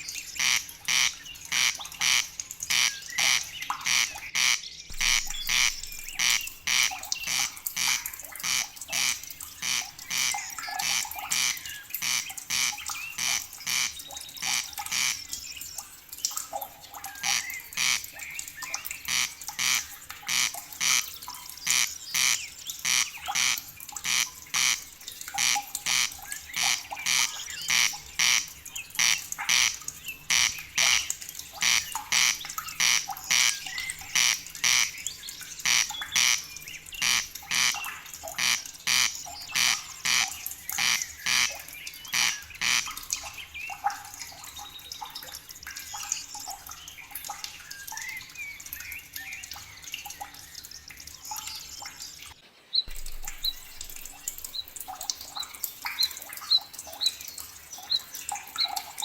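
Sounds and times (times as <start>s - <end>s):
bird chirps: 3.0s - 7.5s, 52.8s - 57.2s.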